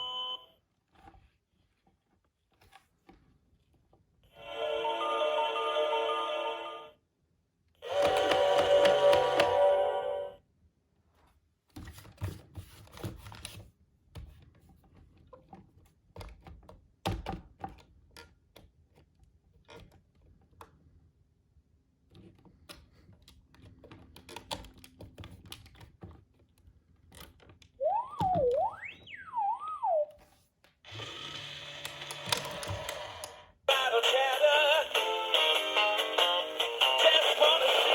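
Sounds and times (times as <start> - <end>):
toy clicks and knocks: 7.9 - 9.5, 31.4 - 33.4
warbling electronic whistle: 27.8 - 30.2.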